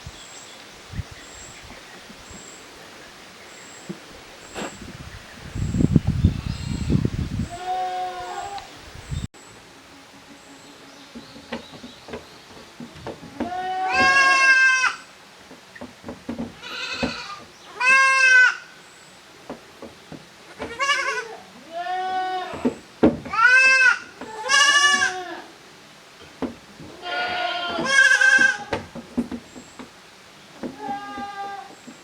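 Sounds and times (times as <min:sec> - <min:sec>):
young goats bleating: 0:06.2 - 0:08.8, 0:10.0 - 0:15.1, 0:16.6 - 0:18.8, 0:20.4 - 0:25.6, 0:26.8 - 0:29.0, 0:30.5 - 0:31.9.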